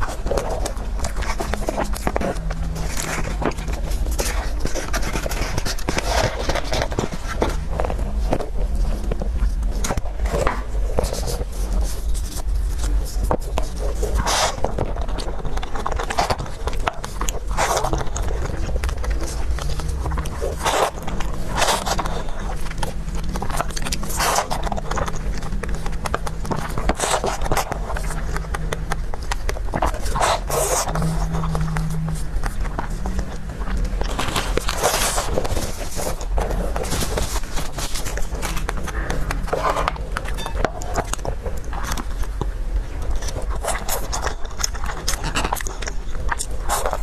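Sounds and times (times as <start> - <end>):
chewing and biting food: 0.0 - 47.0
steady low hum: 0.0 - 47.0.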